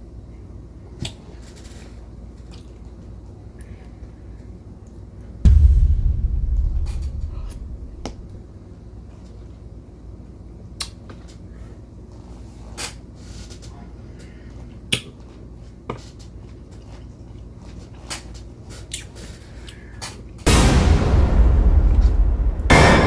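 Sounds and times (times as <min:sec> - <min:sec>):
heavy low thump: 0:05.5 - 0:08.4, 0:20.5 - 0:23.0
low steady hum: 0:05.5 - 0:08.4.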